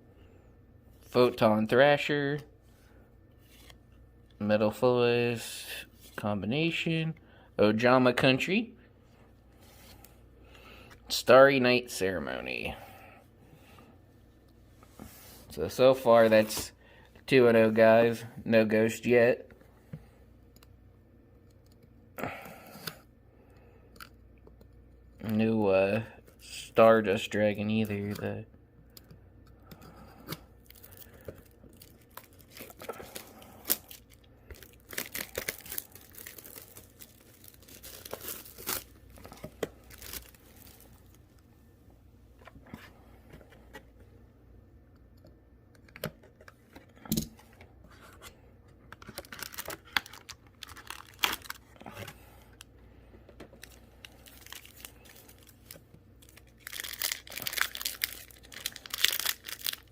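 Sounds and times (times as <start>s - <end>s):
foil wrapper tearing and crinkling: 30.6s - 41.0s, 49.0s - 51.9s, 53.6s - 59.9s.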